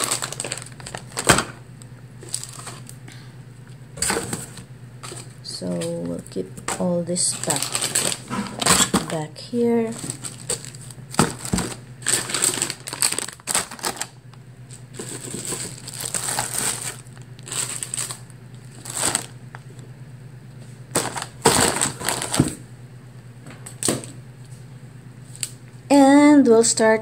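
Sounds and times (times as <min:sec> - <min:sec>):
packaging rustling: 0:00.0 - 0:01.6, 0:02.2 - 0:03.0, 0:04.0 - 0:19.8, 0:20.9 - 0:22.6.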